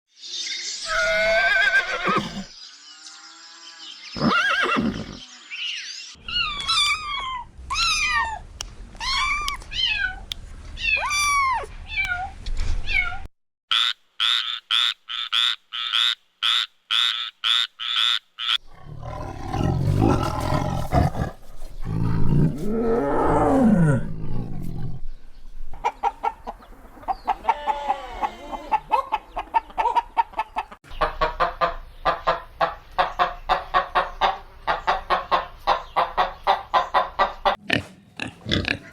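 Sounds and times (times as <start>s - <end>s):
pitched animal cries: 0.9s - 2.5s, 6.2s - 13.3s.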